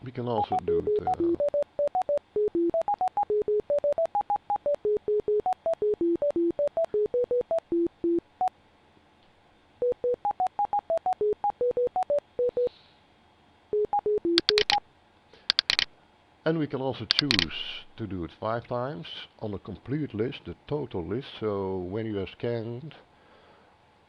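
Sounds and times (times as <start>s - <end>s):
short electronic beeps: 0.4s - 8.2s, 13.8s - 14.8s
sharp clicks: 14.3s - 14.8s, 15.4s - 15.9s, 17.1s - 17.6s.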